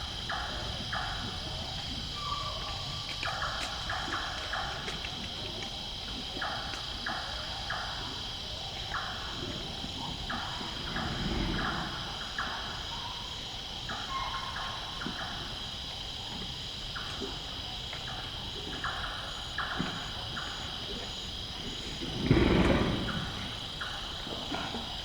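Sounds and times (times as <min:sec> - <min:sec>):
night insects chorus: 0:00.0 - 0:25.0
rhinoceros low sound: 0:00.1 - 0:14.3, 0:18.2 - 0:25.0.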